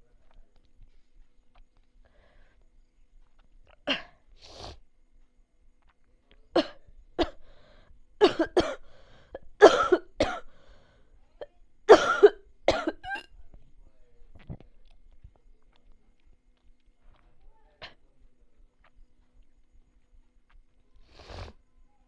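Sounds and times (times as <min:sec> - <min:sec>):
person coughing: 0:08.2 - 0:08.8, 0:09.6 - 0:10.5, 0:11.9 - 0:13.3.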